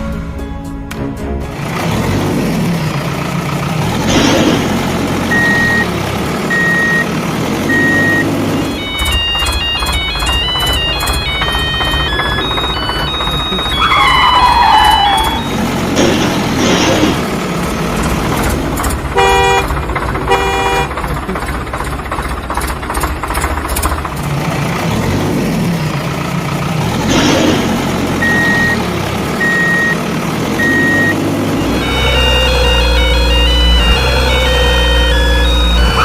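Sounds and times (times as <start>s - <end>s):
truck engine running: 0.0s - 36.0s
reversing beeps: 5.3s - 5.9s, 6.5s - 7.1s, 7.7s - 15.7s, 28.2s - 30.0s, 30.6s - 36.0s
truck horn toots: 19.1s - 21.1s, 30.6s - 36.0s.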